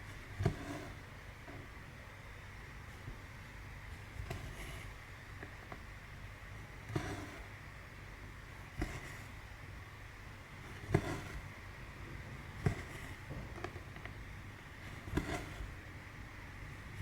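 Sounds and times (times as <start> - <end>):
steady low hum: 0.0 - 17.0
needle tapping through fabric: 8.8 - 9.2, 12.5 - 14.1.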